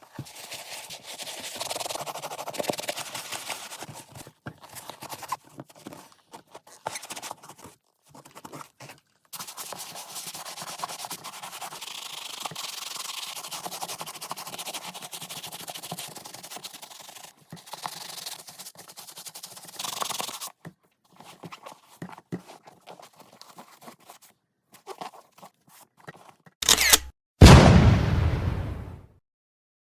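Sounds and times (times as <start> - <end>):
brush scrubbing a sneaker: 0.0 - 26.6
sudden loud burst of noise: 27.4 - 29.0.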